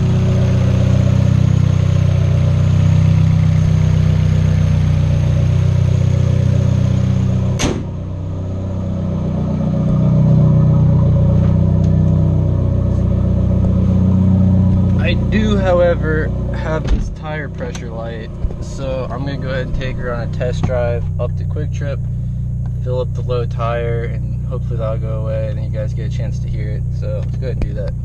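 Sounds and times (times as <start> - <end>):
car engine idling: 0.0 - 28.0
sharp bang: 7.5 - 8.0.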